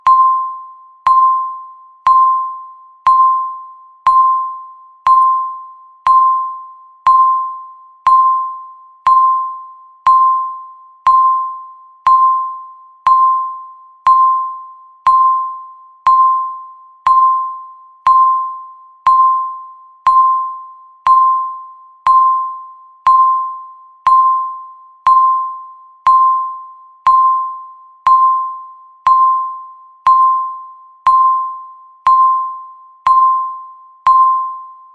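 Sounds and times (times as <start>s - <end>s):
electronic timer ticking: 0.0s - 34.6s.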